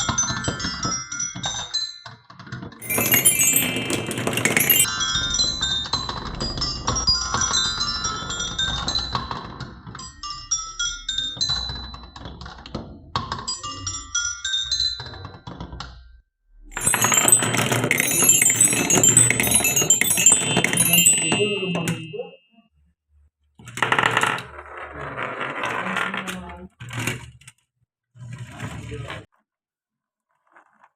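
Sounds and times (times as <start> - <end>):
marbles rolling down wooden run: 2.8 - 4.9, 16.8 - 22.0, 23.8 - 27.1.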